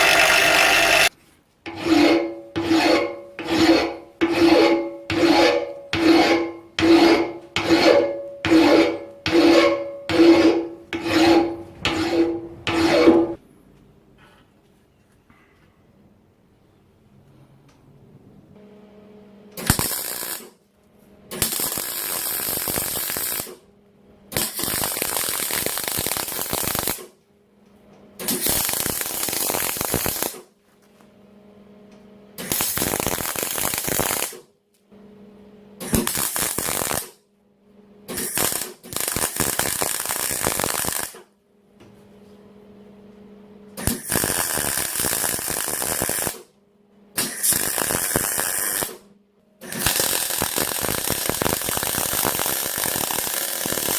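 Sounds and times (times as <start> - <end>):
welder crackling: 0.0 - 1.1, 19.6 - 20.6, 21.3 - 23.6, 24.3 - 27.1, 28.2 - 30.4, 32.4 - 34.4, 35.8 - 37.2, 38.1 - 41.3, 43.8 - 46.5, 47.2 - 49.0, 49.6 - 53.9.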